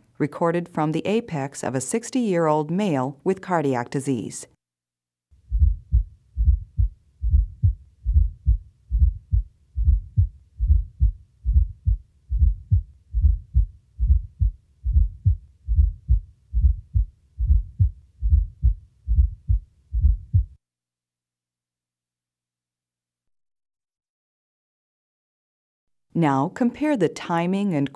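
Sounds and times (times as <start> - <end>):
heartbeat with gallop sound: 5.5 - 20.6.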